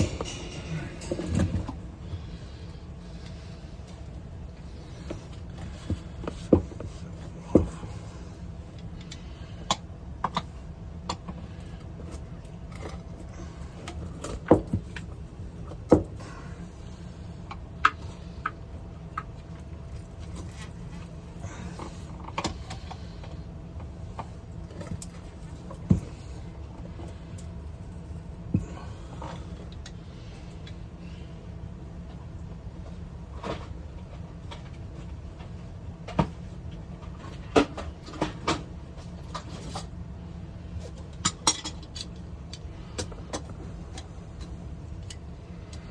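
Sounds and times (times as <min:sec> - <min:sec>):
steady low hum: 0:00.0 - 0:45.9.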